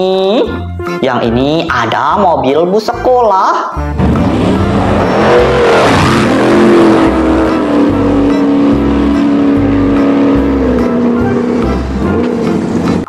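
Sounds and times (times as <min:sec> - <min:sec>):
low repeating pulse: 0:04.0 - 0:13.0
vehicle engine hum: 0:04.0 - 0:13.0.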